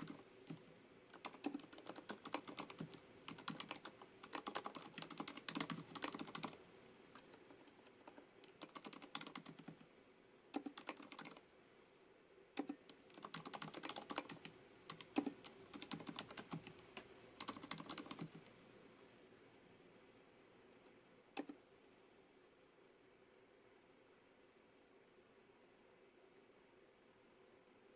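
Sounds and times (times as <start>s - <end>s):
soft keyboard typing: 0.0s - 9.9s, 10.5s - 11.5s, 12.5s - 18.6s, 20.8s - 21.6s.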